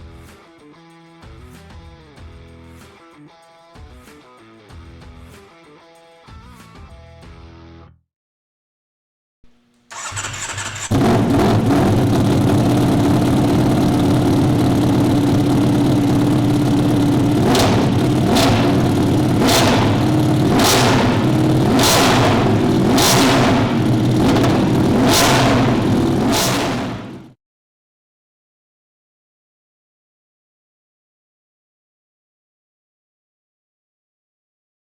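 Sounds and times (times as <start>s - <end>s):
motorcycle starter cranking: 9.8s - 26.0s
motorcycle engine revving: 9.9s - 27.4s.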